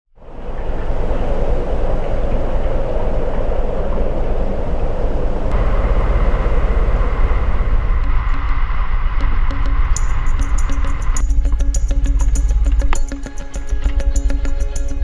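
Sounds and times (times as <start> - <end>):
vehicle engine rumbling: 0.2 - 15.0
steady high tone: 5.4 - 11.2.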